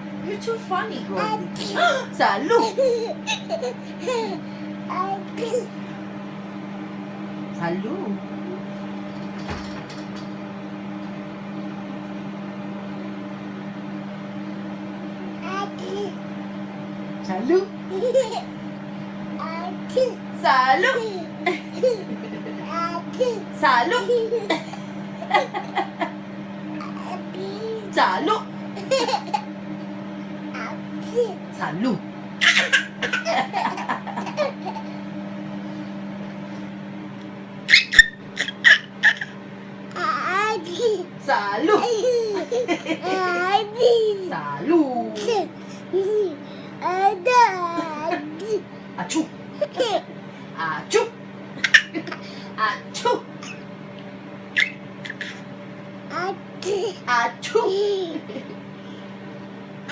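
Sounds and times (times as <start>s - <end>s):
low machine hum: 0.0s - 59.9s
child giggling: 1.2s - 5.7s, 17.9s - 18.5s, 20.9s - 26.1s, 26.8s - 27.9s, 28.8s - 29.5s, 32.4s - 35.0s, 40.0s - 41.1s, 41.7s - 44.3s, 45.2s - 48.7s, 49.6s - 50.1s, 51.6s - 52.2s, 56.1s - 58.6s.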